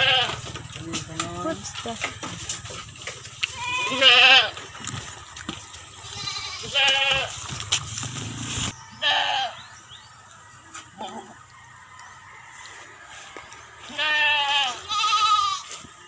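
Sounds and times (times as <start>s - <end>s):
goats bleating: 0.0s - 2.0s, 3.3s - 4.8s, 5.8s - 7.6s, 9.0s - 9.6s, 10.9s - 11.4s, 13.8s - 15.8s.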